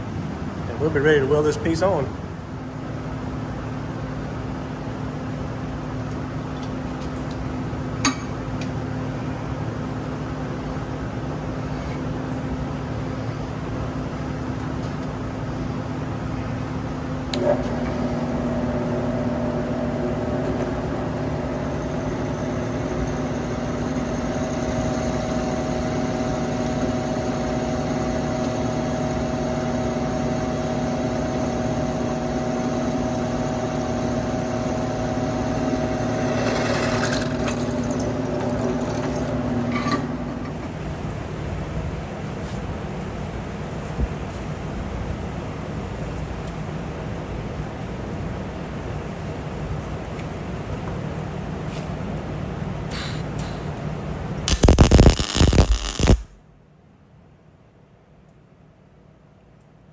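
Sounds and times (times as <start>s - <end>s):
machine hum: 3.9s - 41.8s, 54.4s - 56.5s
drill press motor running: 12.6s - 41.3s, 54.5s - 56.4s
faint high whine: 54.5s - 56.4s.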